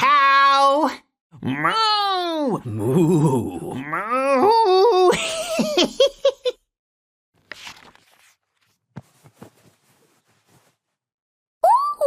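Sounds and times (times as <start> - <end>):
voice imitating cow moo: 1.4 - 4.7.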